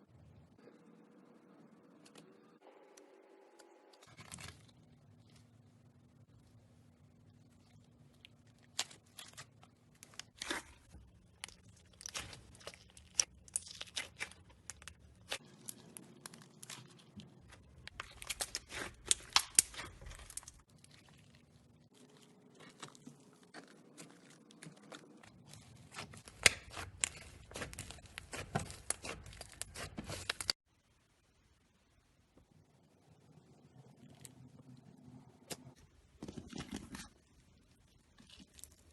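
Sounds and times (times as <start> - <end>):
slime crackling and popping: 8.2 - 21.1, 22.0 - 30.6.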